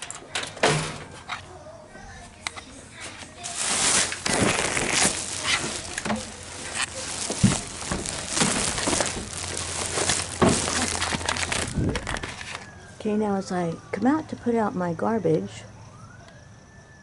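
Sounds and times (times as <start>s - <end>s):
plastic bag rustling: 3.0s - 12.7s.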